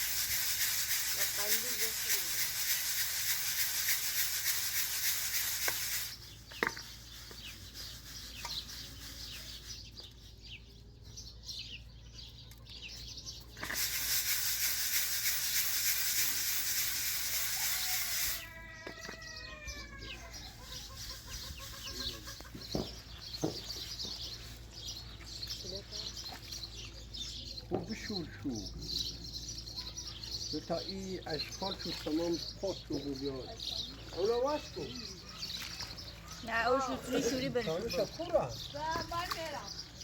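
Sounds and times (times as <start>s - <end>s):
chicken clucking: 20.2s - 22.9s.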